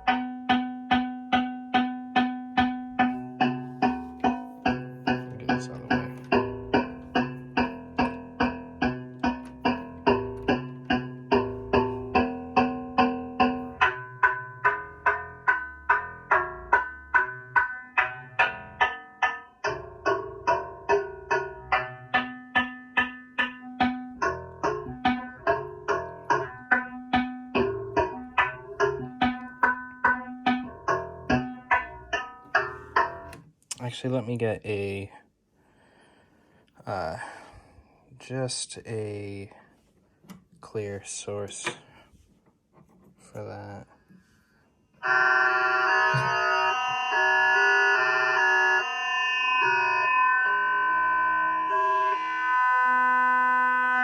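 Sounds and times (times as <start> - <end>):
synthesizer plucked notes: 0.0 - 33.6, 45.0 - 54.0.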